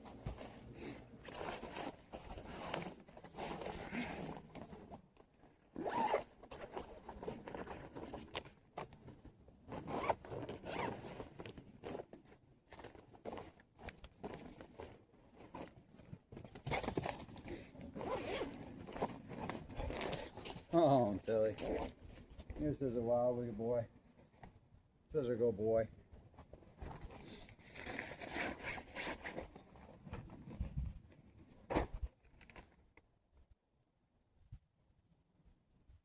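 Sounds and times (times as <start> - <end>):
zipper being pulled: 1.2 - 4.8, 5.8 - 8.2, 9.7 - 11.3, 17.8 - 20.6, 27.0 - 29.5.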